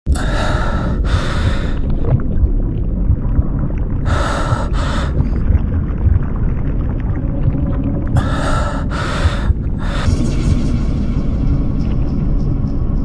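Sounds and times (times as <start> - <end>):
frightened heavy breathing: 0.1 - 1.8, 4.1 - 5.2, 8.2 - 10.2
deep low drone: 0.1 - 13.0.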